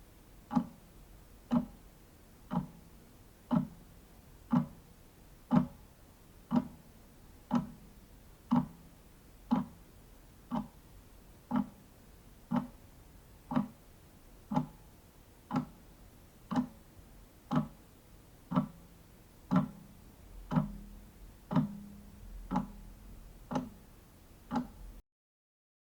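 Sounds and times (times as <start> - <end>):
wall clock ticking: 0.4 - 1.8, 2.4 - 10.8, 11.5 - 11.9, 12.5 - 13.9, 14.5 - 16.9, 17.5 - 17.8, 18.4 - 25.0.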